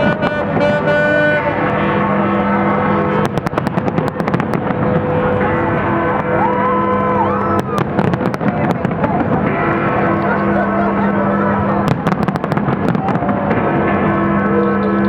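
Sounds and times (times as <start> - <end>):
fireworks cracking: 0.0 - 15.0
music: 0.0 - 15.0.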